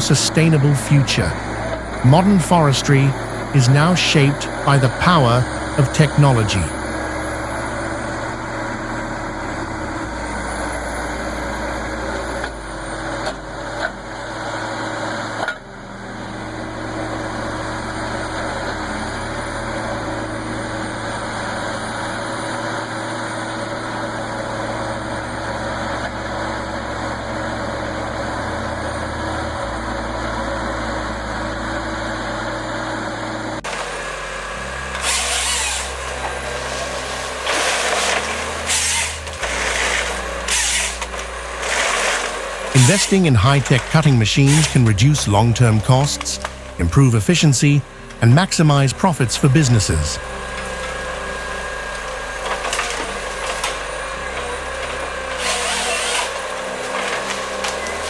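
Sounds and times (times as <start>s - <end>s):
heavy machine engine running: 0.0s - 58.0s
harsh rasping noise: 34.6s - 58.0s.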